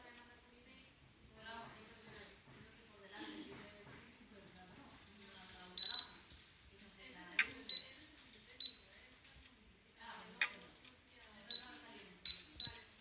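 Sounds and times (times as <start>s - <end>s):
electronic device beeping: 5.8s - 6.3s, 7.4s - 8.0s, 8.6s - 8.9s, 11.5s - 13.0s.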